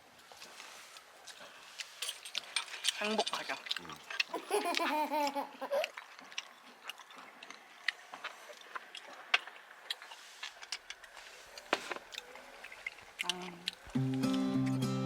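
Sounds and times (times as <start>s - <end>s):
person laughing: 4.3s - 5.9s.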